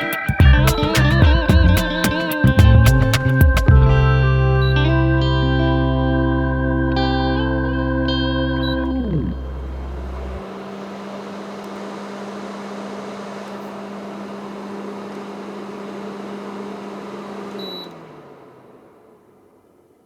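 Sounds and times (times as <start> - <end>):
air purifier fan humming: 8.1 - 19.6
short beep: 17.6 - 17.9.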